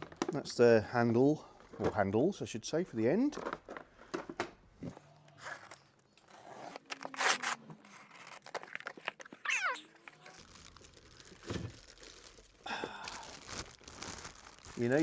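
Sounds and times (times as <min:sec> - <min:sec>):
packaging crinkling and rustling: 0:05.4 - 0:15.0.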